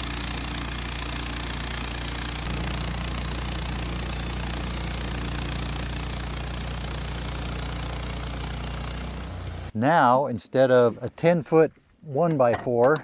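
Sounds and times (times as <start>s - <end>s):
sawmill engine running: 0.0s - 9.7s.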